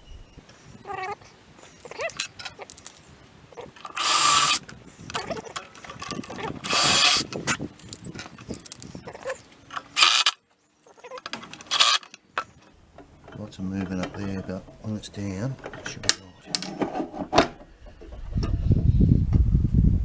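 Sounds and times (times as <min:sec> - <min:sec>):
parts being handled: 0:01.6 - 0:10.4, 0:11.0 - 0:18.2
power drill bursts: 0:03.8 - 0:04.6, 0:06.6 - 0:07.3, 0:11.6 - 0:12.1.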